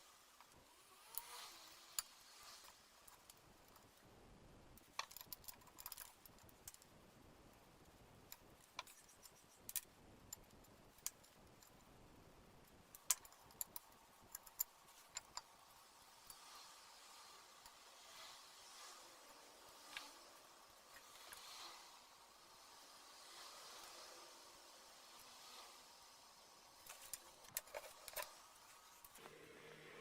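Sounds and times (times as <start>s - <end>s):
metallic clicks and clinks: 4.8s - 7.0s, 12.7s - 16.5s.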